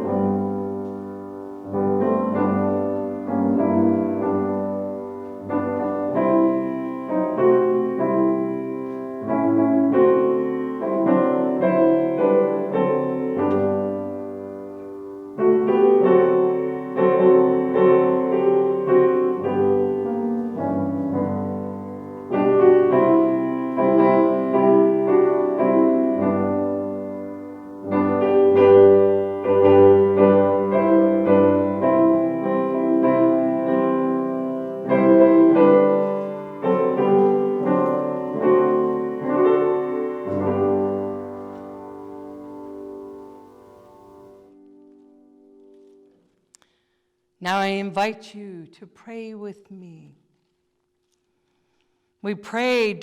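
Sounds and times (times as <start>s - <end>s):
slow solo piano chords: 0.0s - 46.2s.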